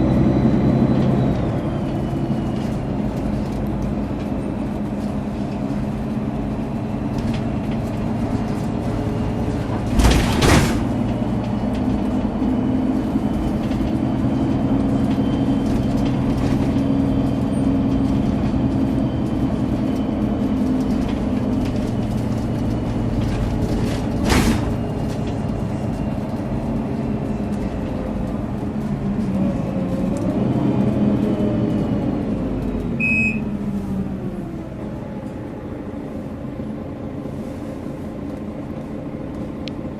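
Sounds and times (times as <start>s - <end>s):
bus engine running: 0.0s - 39.9s
short beep: 33.0s - 33.5s.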